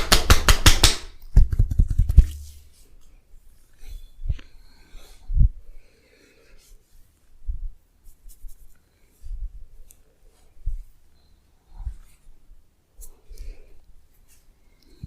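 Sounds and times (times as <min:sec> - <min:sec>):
hands rubbing a body: 0:01.4 - 0:03.0, 0:08.0 - 0:11.1.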